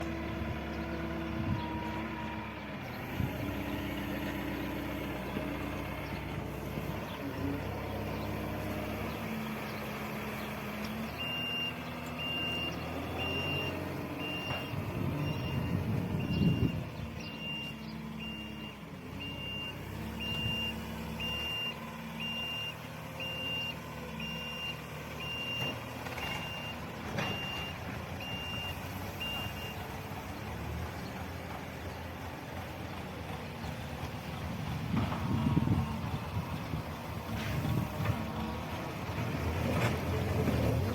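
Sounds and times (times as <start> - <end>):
loader engine running: 0.0 - 40.9
reversing alarm beeping: 11.2 - 29.8.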